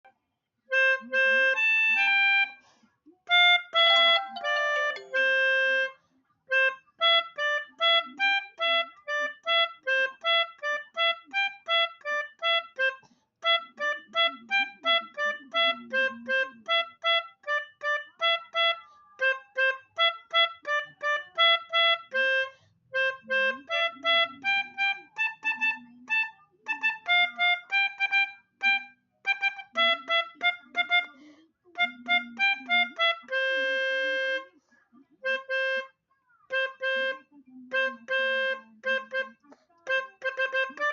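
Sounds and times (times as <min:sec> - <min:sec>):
reedy horn melody: 0:03.8 - 0:05.9.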